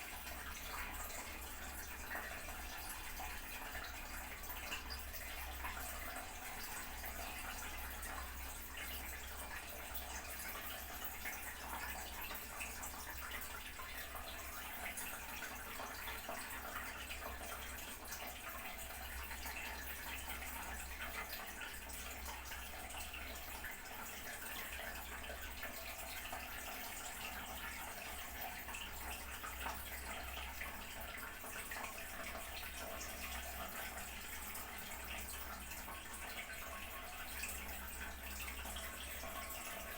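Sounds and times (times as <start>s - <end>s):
toilet cistern refilling: 0.0s - 39.9s.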